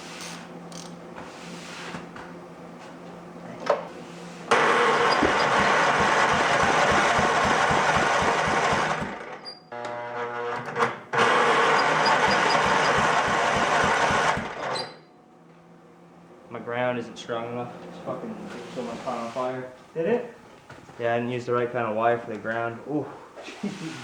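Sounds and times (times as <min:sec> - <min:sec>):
mower engine cranking: 0:04.5 - 0:09.4, 0:11.1 - 0:14.8.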